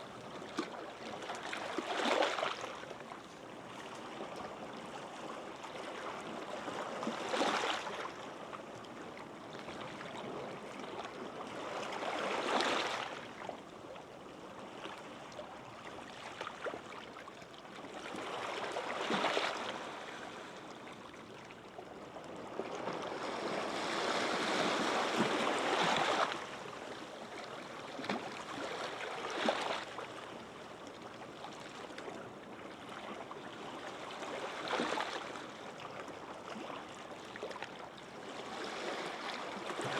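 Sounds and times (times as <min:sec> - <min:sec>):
small waves breaking on sand: 0:23.0 - 0:26.9.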